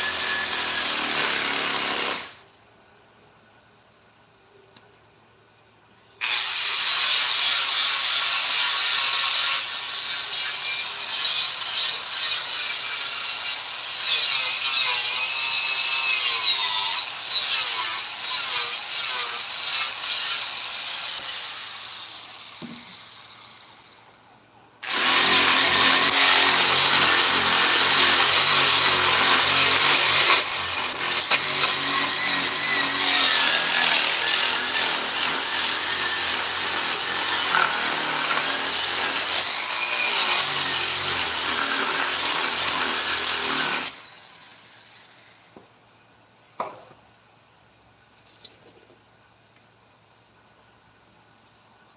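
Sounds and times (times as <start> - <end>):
power tool cutting wood: 0.0 - 2.4, 6.2 - 23.8, 24.8 - 45.4.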